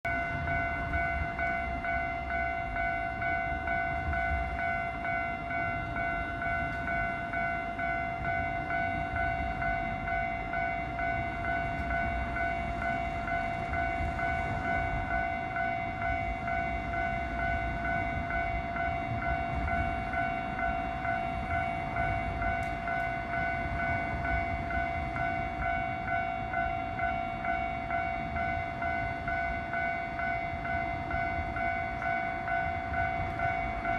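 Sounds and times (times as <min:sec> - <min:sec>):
level-crossing warning bell ringing: 0:00.0 - 0:33.9.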